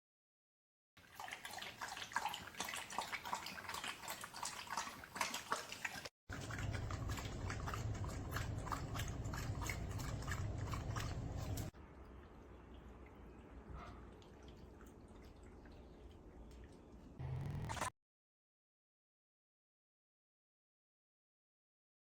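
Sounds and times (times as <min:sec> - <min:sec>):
water dripping in fountain: 0:01.1 - 0:17.2
low hum: 0:17.2 - 0:17.9.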